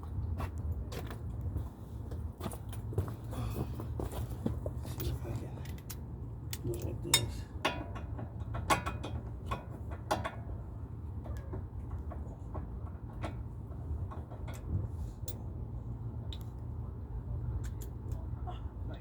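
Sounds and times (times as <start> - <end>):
metal tools clicking on brake parts: 5.0 - 10.5, 17.6 - 18.2.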